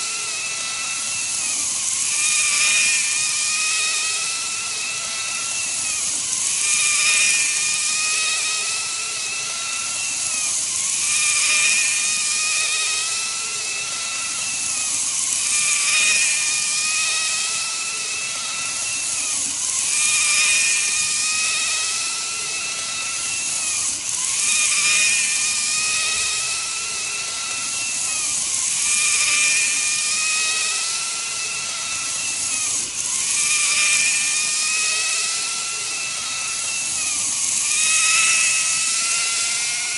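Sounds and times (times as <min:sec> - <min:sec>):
model train motor whine: 0:00.0 - 0:39.9.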